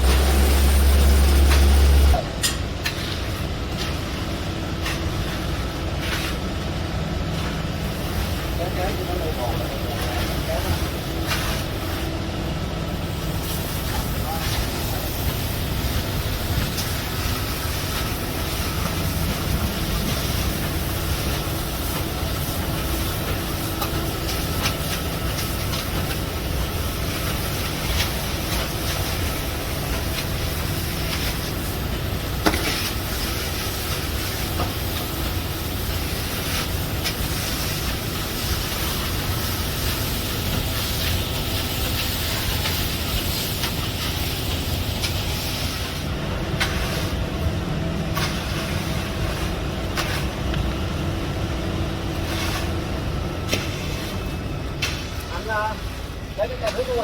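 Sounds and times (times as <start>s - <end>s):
machinery engine running: 0.0s - 2.4s, 3.6s - 32.4s.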